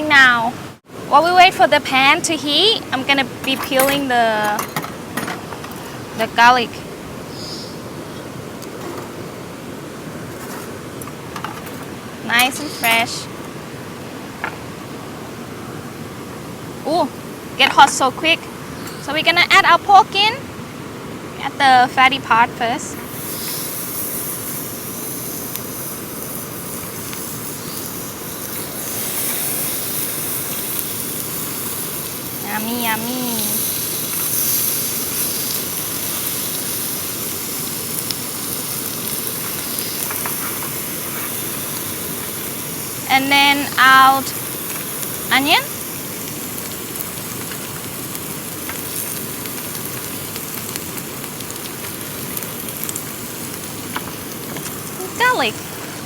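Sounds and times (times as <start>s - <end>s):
rain hissing: 0.0s - 56.0s
meat sizzling in a pan: 22.8s - 56.0s.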